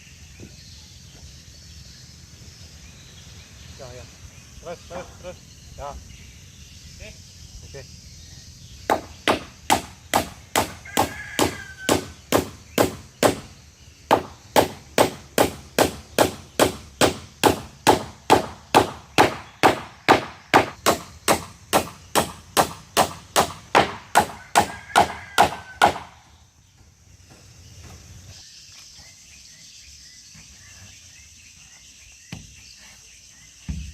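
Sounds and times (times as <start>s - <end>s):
hand tool striking timber: 8.9s - 13.5s, 14.1s - 26.1s.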